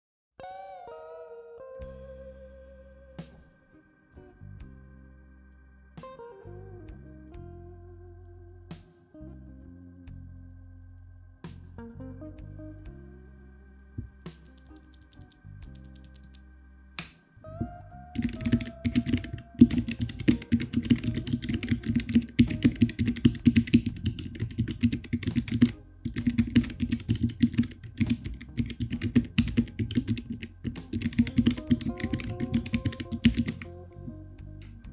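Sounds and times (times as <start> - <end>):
keyboard typing clacks: 14.3 - 16.4, 18.2 - 33.7.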